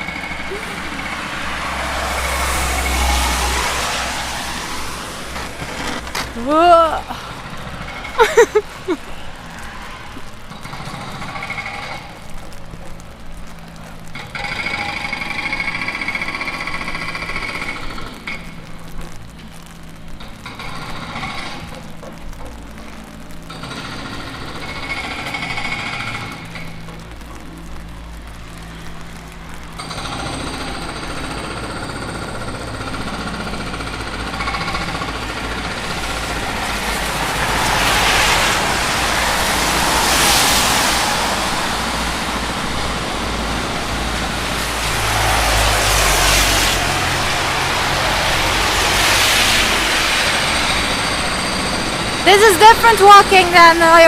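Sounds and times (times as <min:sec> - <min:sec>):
vehicles passing by: 0:00.0 - 0:54.0.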